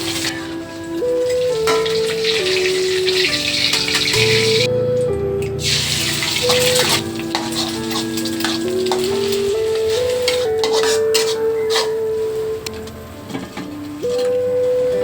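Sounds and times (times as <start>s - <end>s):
food sizzling in a pan: 0.0s - 4.7s, 5.6s - 12.6s
melodic background music: 0.0s - 15.0s.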